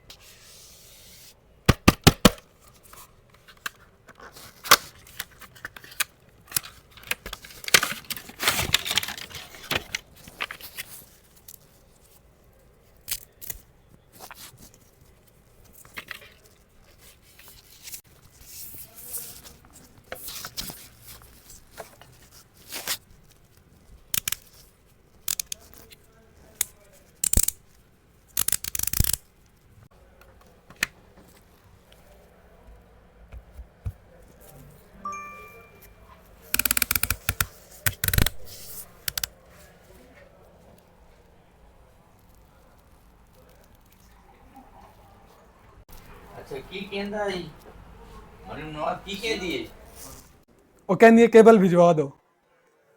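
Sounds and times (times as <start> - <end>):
tearing and rustling packaging: 2.7 - 29.7
packaging clicks and taps: 36.6 - 39.3.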